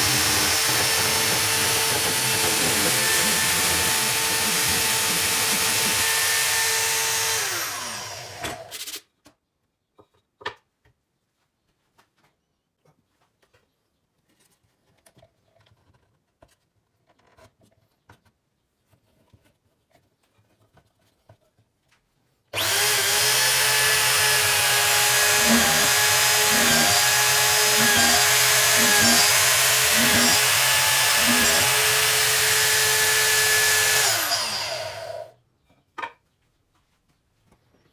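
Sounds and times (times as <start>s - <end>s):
electric drill motor running: 0.0s - 8.7s, 22.6s - 35.3s.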